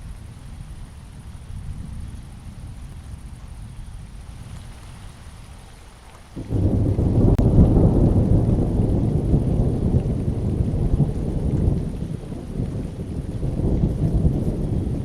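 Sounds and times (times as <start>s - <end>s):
steady rain: 0.0s - 15.0s
thunder rumbling: 6.4s - 15.0s.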